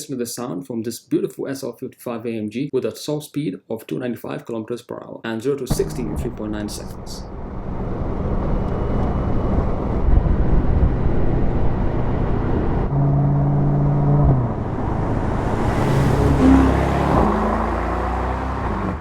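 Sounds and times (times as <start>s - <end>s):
car engine deep rumble: 5.7s - 19.0s.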